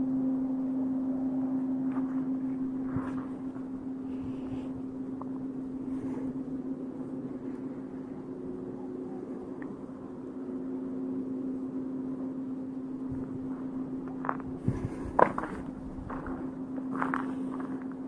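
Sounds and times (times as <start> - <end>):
low droning hum: 0.0 - 18.0
rumbling noise: 13.0 - 18.0.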